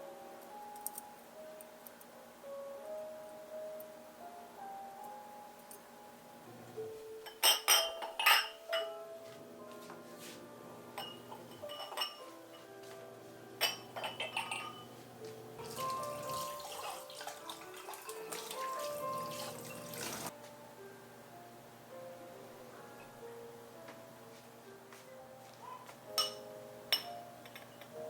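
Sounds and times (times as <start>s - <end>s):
soft background music: 0.0s - 28.0s
tableware clinking: 7.2s - 9.0s, 10.9s - 12.7s, 13.6s - 15.0s, 18.0s - 20.3s, 26.1s - 28.0s
water running: 15.6s - 20.3s.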